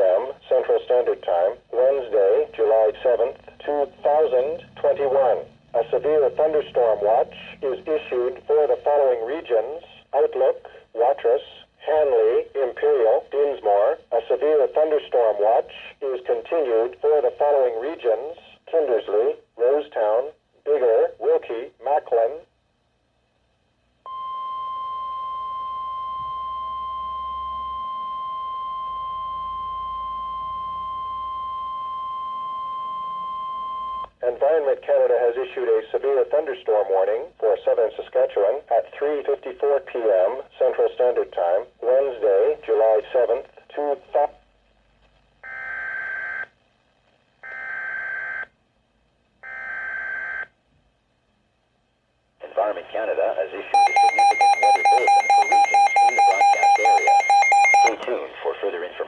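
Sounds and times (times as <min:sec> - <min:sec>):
steady alarm sine tone: 0:24.1 - 0:34.1, 0:53.8 - 0:58.0.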